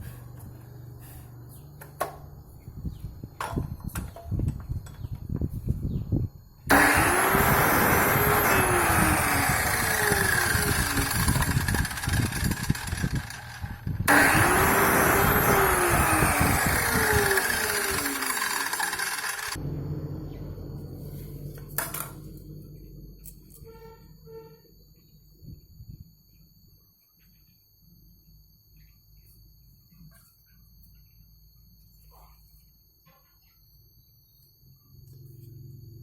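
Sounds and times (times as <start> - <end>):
cut-off saw whining: 6.6 - 24.3.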